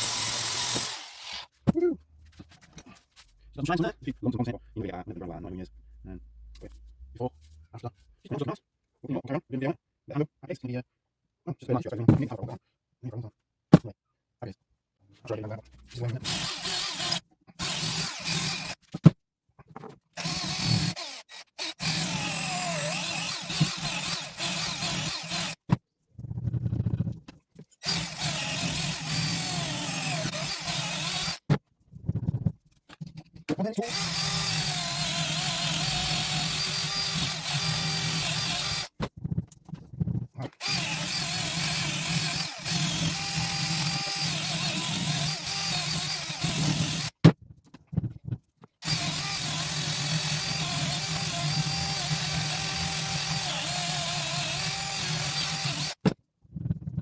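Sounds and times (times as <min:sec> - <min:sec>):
grinder grinding metal: 0:00.0 - 0:01.6, 0:15.8 - 0:18.8, 0:20.2 - 0:25.6, 0:27.8 - 0:31.5, 0:33.8 - 0:39.0, 0:40.5 - 0:47.1, 0:48.8 - 0:56.1.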